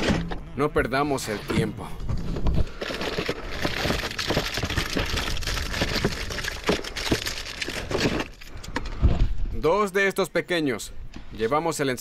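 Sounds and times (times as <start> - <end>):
dry twigs crunching and snapping: 2.6 - 9.0.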